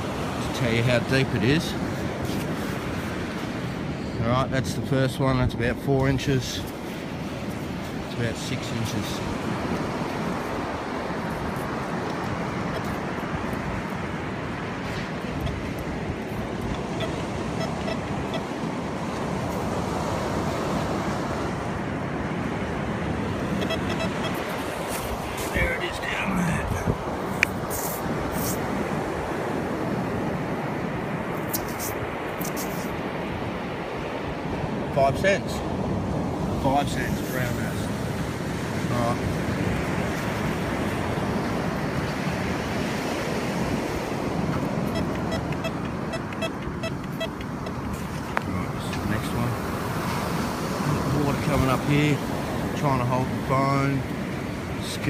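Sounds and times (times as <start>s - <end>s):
wind buffeting the microphone: 0.0s - 53.5s
surf washing on beach: 0.0s - 55.0s
metal detector beeps: 16.7s - 18.5s, 23.5s - 24.5s, 44.9s - 47.9s.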